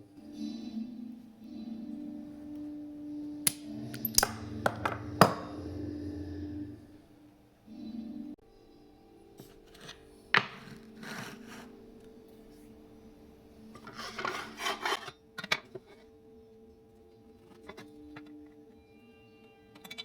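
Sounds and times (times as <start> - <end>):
wood scraping on wood: 9.6 - 11.8, 13.8 - 15.1.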